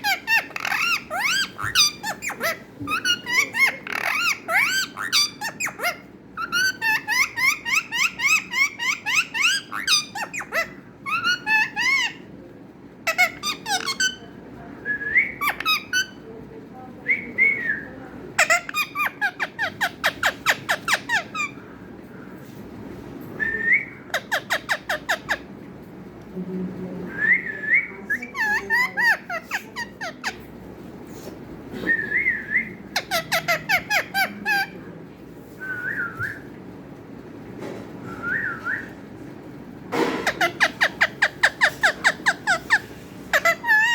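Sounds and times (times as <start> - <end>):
parrot chirping calls: 0.0 - 12.3, 13.0 - 14.4, 15.3 - 16.2, 18.3 - 21.9, 23.9 - 25.6, 27.8 - 30.8, 32.2 - 34.8, 40.1 - 43.9
parrot whistling: 40.3 - 43.9.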